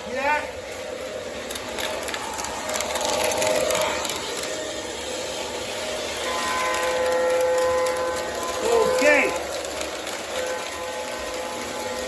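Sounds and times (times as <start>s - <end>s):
model train running on track: 0.0s - 12.0s
electronic locomotive horn: 5.6s - 12.0s.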